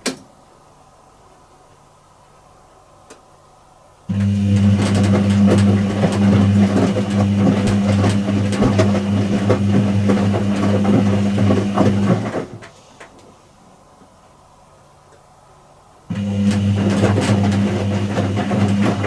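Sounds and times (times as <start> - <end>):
washing machine running: 4.1 - 12.8, 16.1 - 19.0.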